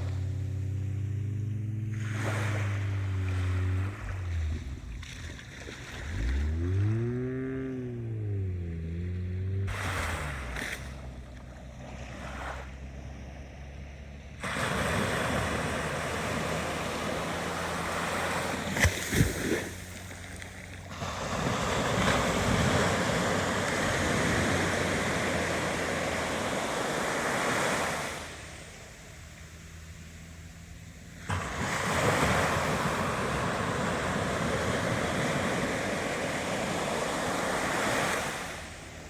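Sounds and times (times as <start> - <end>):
ocean waves surging: 0.0 - 11.2, 14.4 - 20.2, 20.9 - 29.6, 31.2 - 39.0
low steady hum: 0.0 - 14.5.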